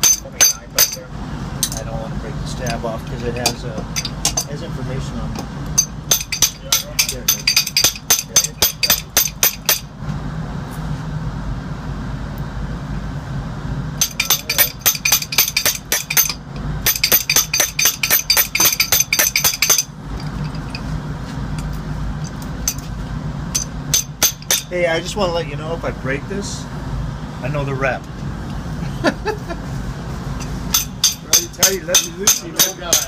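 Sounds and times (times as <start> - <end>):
rapid metallic tapping: 5.8 - 9.9, 14.0 - 20.8, 23.5 - 24.7, 30.4 - 33.0.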